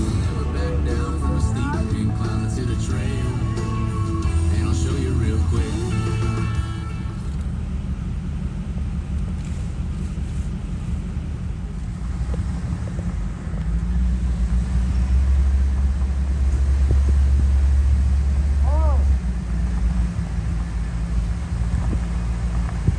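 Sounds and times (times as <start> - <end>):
car engine rumbling: 0.0 - 22.9.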